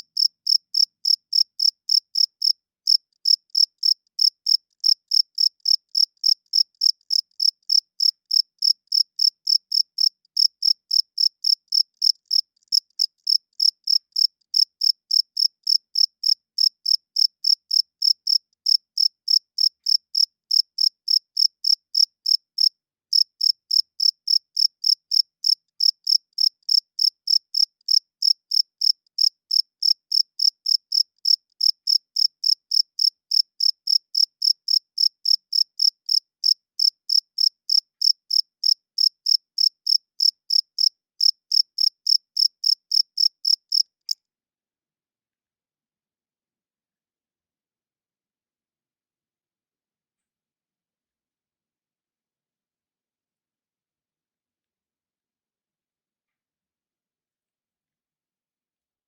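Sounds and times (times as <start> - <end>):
cricket chirping: 0.2 - 43.9.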